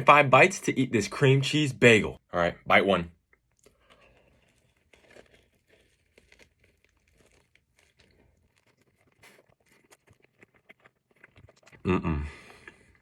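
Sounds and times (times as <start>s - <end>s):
faint chewing: 3.3s - 13.0s.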